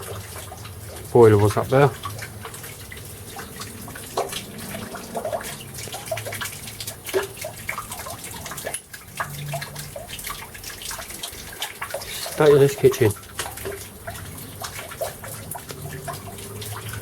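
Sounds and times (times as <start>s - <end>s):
water splashing and dripping: 0.0s - 17.0s
water trickling from pipe: 0.0s - 17.0s.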